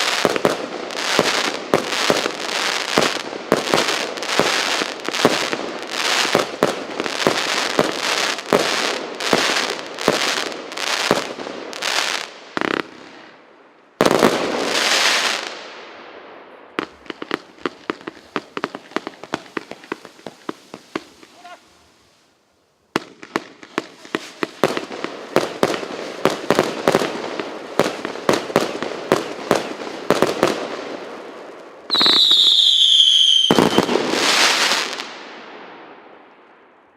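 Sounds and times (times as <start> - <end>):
fireworks bangs and crackle: 0.0 - 13.4, 14.0 - 22.2, 22.9 - 36.6
whistling firework shell: 31.9 - 33.9.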